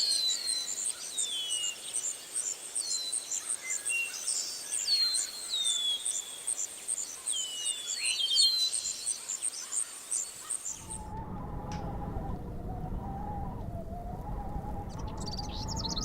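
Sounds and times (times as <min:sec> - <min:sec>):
birds singing falling whistled notes: 0:00.0 - 0:16.0.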